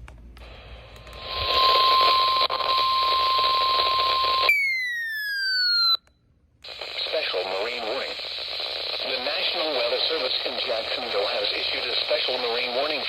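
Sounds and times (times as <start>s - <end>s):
radio static: 0.4s - 4.5s, 6.6s - 13.0s.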